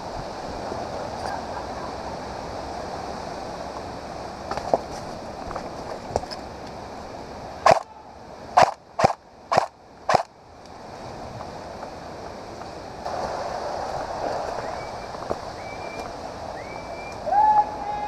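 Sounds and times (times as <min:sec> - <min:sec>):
steady rushing noise: 0:00.0 - 0:18.0
airsoft gun shots: 0:07.7 - 0:07.9, 0:08.6 - 0:10.3.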